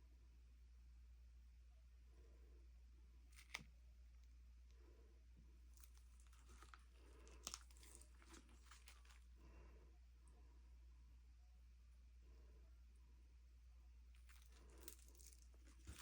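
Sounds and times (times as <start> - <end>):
rustling: 5.6 - 9.7, 14.1 - 16.0.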